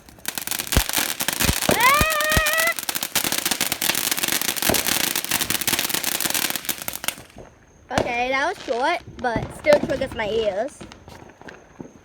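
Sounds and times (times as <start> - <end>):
firework crackling pops: 0.0 - 12.0
deep firework thumps: 6.8 - 12.0.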